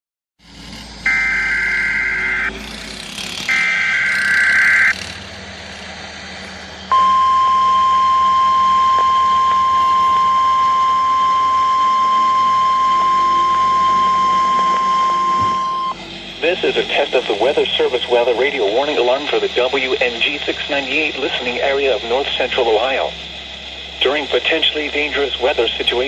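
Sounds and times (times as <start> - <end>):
buzzing digital data bursts: 0.9 - 5.2
steady alarm tone: 1.0 - 2.6, 3.5 - 5.1, 6.8 - 26.0.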